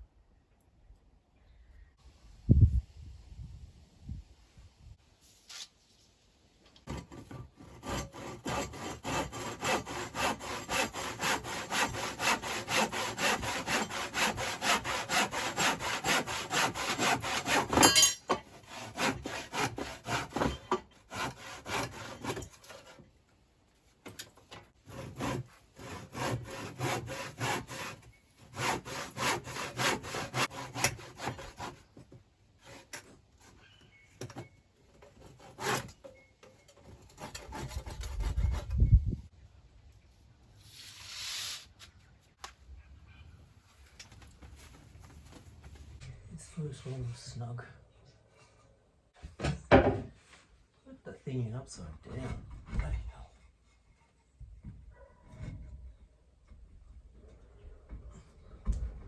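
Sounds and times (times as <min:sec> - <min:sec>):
hand saw cutting timber: 0:06.9 - 0:23.1, 0:24.0 - 0:32.0, 0:32.6 - 0:33.6, 0:34.9 - 0:36.1, 0:36.8 - 0:38.8.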